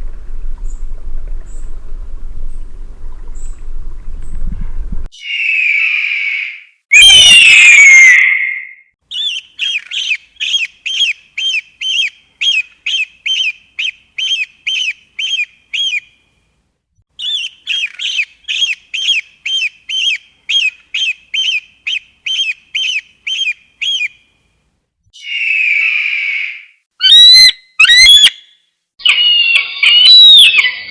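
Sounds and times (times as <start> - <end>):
eagle scream: 5.1 - 8.8, 25.2 - 30.9
eagle piping calls: 5.2 - 16.1, 17.2 - 24.2, 25.2 - 30.9.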